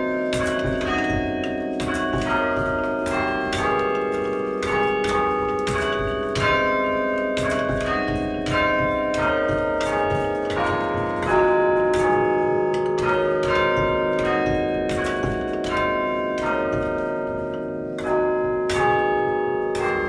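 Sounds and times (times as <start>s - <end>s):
church bells ringing: 0.0s - 20.0s.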